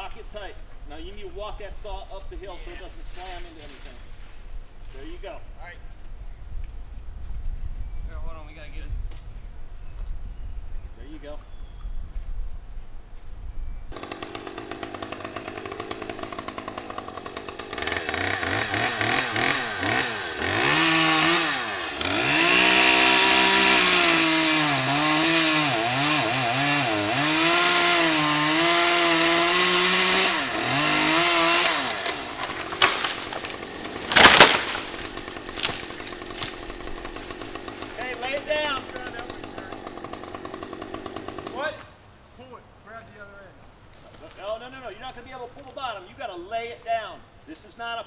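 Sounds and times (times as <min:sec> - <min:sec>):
chainsaw cutting wood: 0:13.9 - 0:41.8
loud crack: 0:31.6 - 0:38.3.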